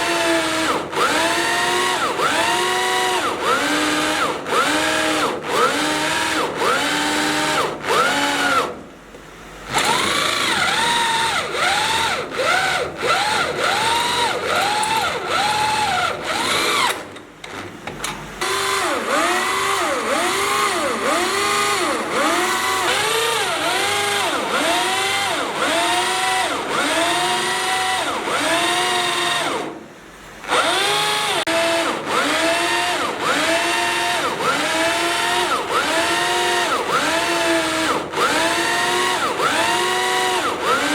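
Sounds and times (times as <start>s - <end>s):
power drill boring into steel: 9.7s - 17.1s, 18.4s - 29.7s, 30.5s - 40.9s.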